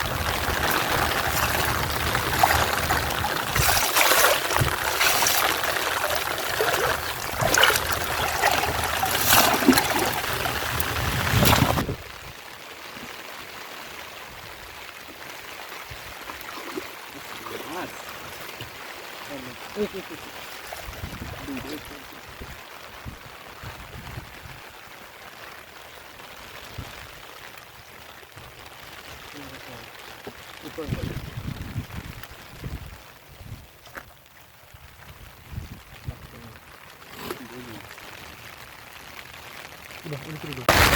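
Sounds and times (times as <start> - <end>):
loud water splashes: 0.0 - 12.0, 15.6 - 22.1, 40.5 - 40.9
water trickling and splashing: 0.0 - 40.9.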